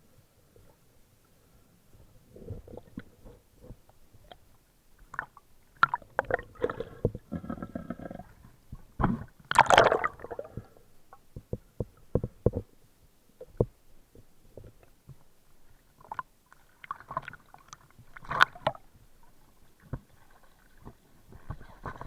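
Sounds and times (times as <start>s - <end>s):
water gurgling underwater: 9.0s - 10.8s
rush of bubbles: 9.5s - 10.6s.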